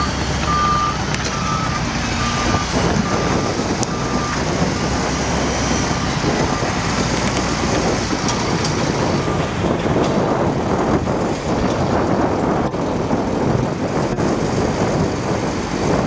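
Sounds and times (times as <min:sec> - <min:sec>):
reversing alarm beeps: 0:00.0 - 0:06.8
diesel engine running under load: 0:00.0 - 0:16.0.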